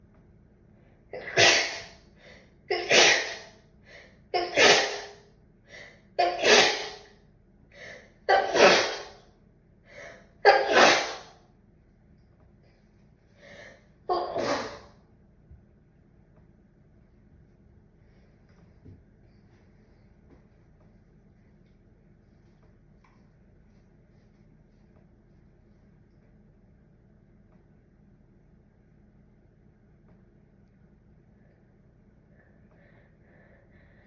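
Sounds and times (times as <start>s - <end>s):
person sneezing: 1.2s - 2.0s, 2.7s - 3.5s, 4.4s - 5.2s, 6.2s - 7.1s, 8.3s - 9.2s, 10.4s - 11.4s, 14.1s - 15.0s.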